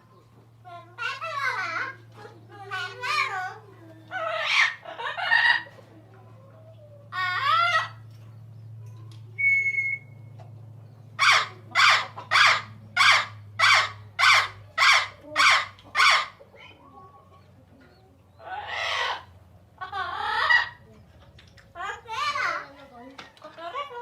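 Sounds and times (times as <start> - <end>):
bird whistle: 9.4 - 10.3
harsh bird squawks: 11.2 - 16.4, 18.4 - 20.8.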